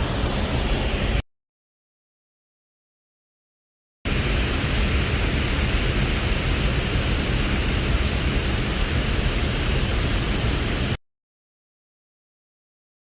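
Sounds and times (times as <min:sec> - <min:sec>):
rushing river and waterfall: 0:00.0 - 0:01.2, 0:04.1 - 0:11.0.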